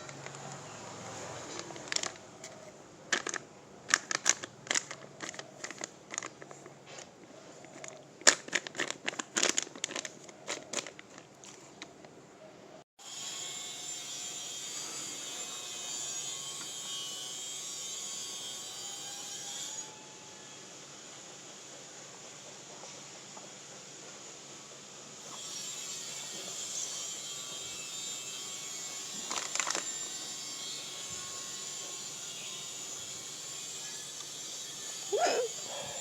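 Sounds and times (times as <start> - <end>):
crinkling: 1.4 - 12.2.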